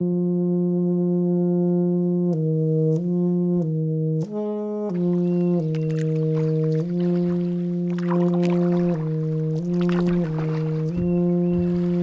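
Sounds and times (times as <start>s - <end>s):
low sustained brass notes: 0.0s - 12.0s.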